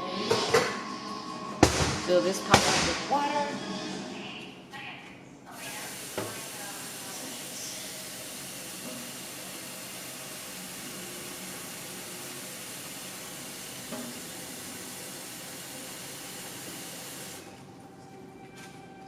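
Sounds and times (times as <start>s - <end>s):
faucet water filling a pot: 5.6s - 17.5s.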